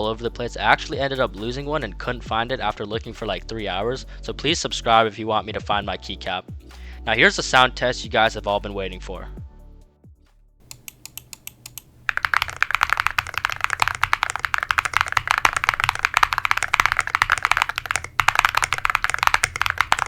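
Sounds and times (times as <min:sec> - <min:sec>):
mechanical keyboard typing: 0:10.6 - 0:20.0.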